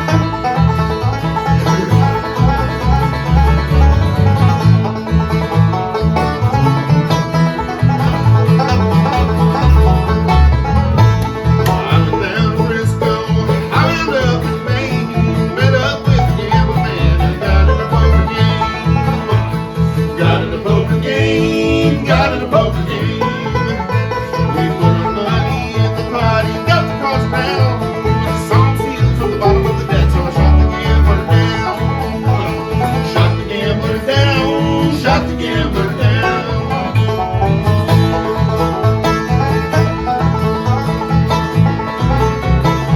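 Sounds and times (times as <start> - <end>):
banjo picking: 0.0 - 42.9
bass line: 0.0 - 42.9
strummed guitar: 0.0 - 42.9.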